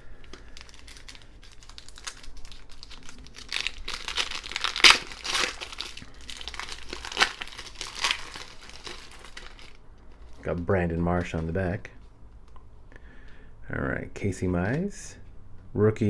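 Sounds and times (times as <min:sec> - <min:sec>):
wrapper crinkling: 0:00.0 - 0:10.7.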